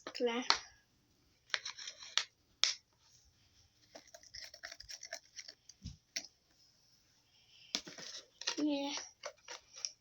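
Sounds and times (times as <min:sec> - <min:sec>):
spoon scraping container: 0:01.5 - 0:02.2, 0:03.9 - 0:05.6.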